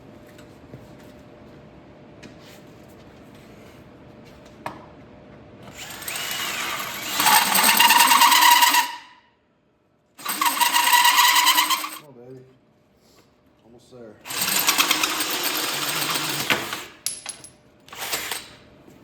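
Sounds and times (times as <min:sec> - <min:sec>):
power tool running on steel: 0:05.7 - 0:09.1, 0:10.2 - 0:12.0, 0:14.3 - 0:17.0.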